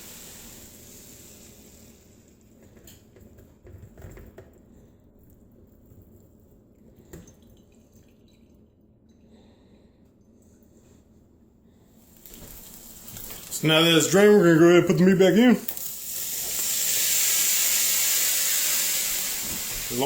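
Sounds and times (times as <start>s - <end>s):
grease dripping: 5.2s - 9.5s, 12.0s - 14.2s.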